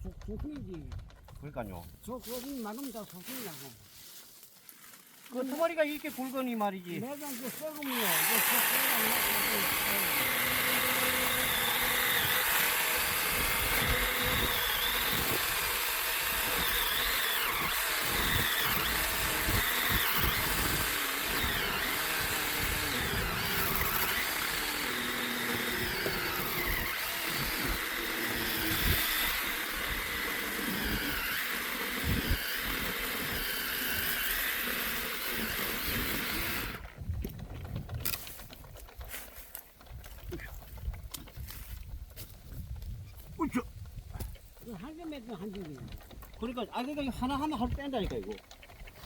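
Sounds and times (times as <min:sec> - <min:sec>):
small petrol engine running: 0:07.4 - 0:42.3.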